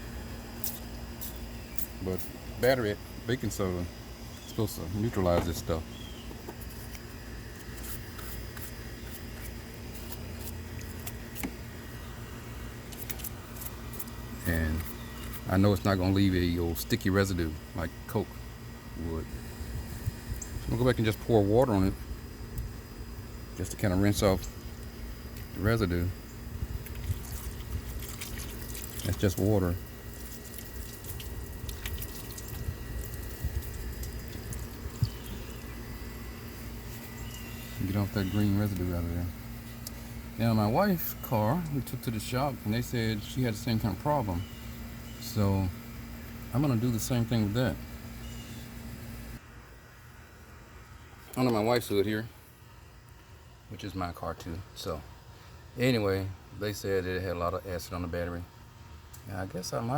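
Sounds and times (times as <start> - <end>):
low steady hum: 0.0 - 59.9
water trickling and dripping: 26.8 - 35.8.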